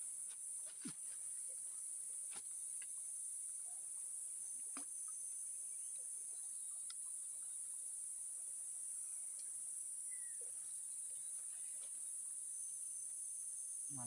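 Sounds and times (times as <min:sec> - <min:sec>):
crickets chirping: 0:00.0 - 0:14.0
faint clicks: 0:06.8 - 0:07.0.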